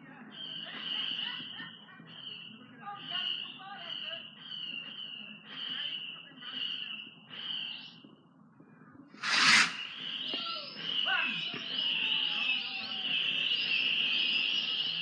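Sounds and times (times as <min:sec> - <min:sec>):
warbling whistle with falling whines: 0:09.2 - 0:10.1
firework whistles: 0:09.2 - 0:10.8.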